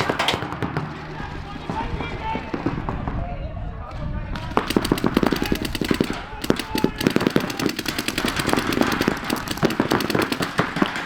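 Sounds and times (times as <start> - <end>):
rapid paintball marker fire: 4.4 - 11.0.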